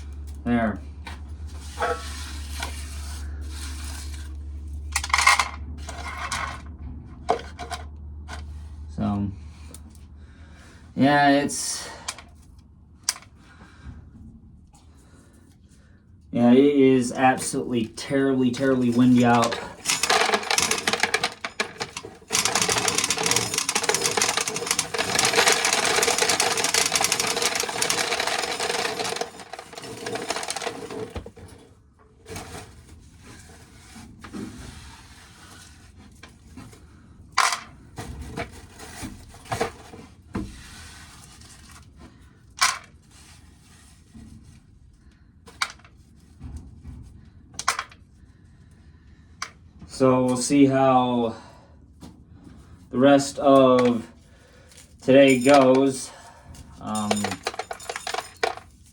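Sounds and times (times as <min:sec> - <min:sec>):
kernels and cobs dropping: 0:18.5 - 0:31.5, 0:56.8 - 0:58.9
corn kernels rattling: 0:18.8 - 0:31.2, 0:56.8 - 0:58.8.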